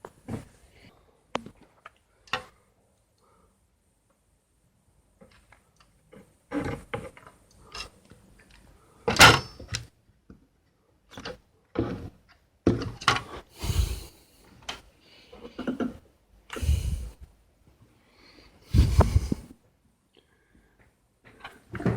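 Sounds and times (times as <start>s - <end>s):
rustling scrape: 18.7s - 19.5s.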